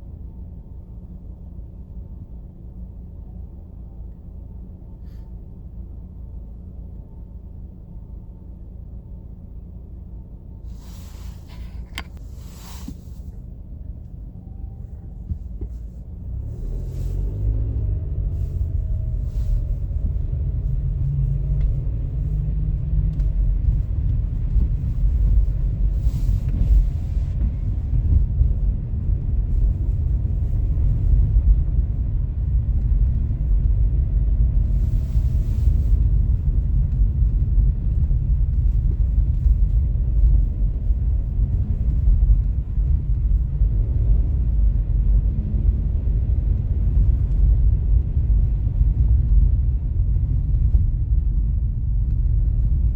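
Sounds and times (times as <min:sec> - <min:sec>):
loud low rumble: 0:00.0 - 0:52.9.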